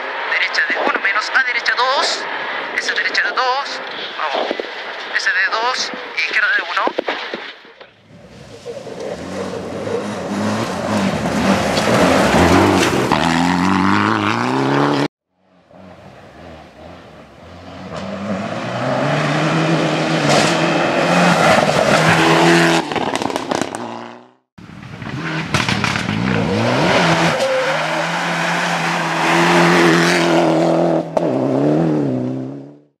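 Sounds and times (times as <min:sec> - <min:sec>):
rally car engine revving: 0:08.0 - 0:32.9.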